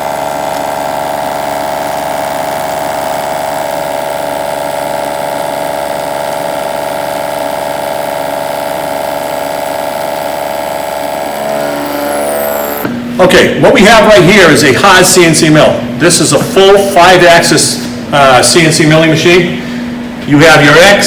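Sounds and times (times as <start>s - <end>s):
milling machine whine: 0.0s - 13.2s.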